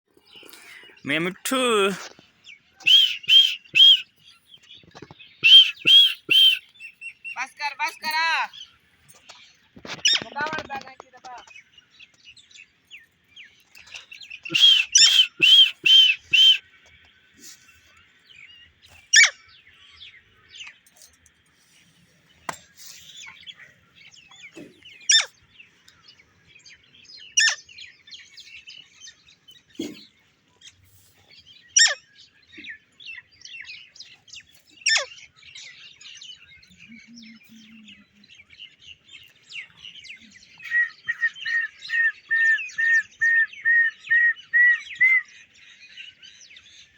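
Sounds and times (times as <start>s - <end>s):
parrot chattering: 5.4s - 6.6s
parrot screeching: 14.6s - 16.6s.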